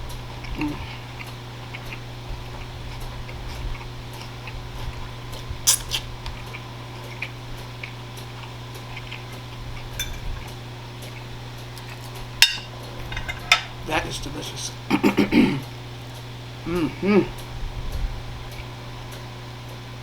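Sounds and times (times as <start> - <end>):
steady low hum: 0.0 - 20.0
person chewing food: 0.3 - 12.3.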